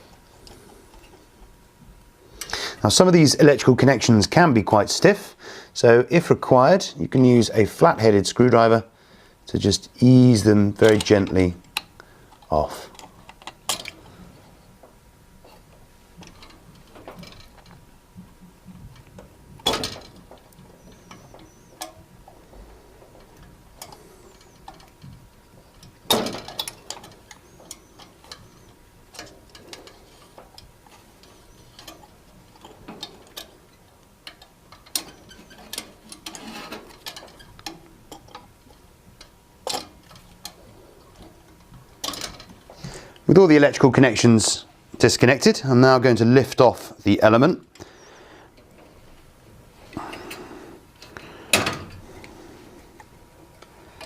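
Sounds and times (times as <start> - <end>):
small metallic clicks: 18.7 - 42.8.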